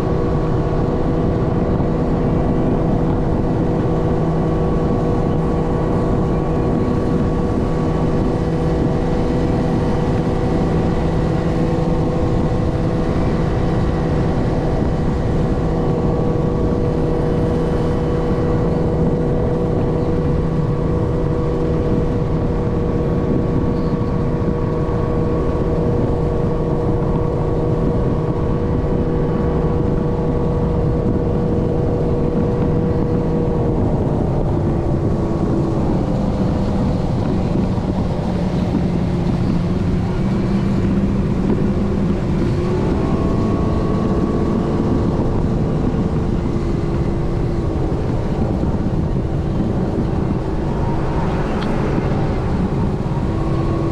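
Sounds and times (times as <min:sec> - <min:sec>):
motorboat engine running: 0:00.0 - 0:53.9
wind and water rushing: 0:00.0 - 0:53.9.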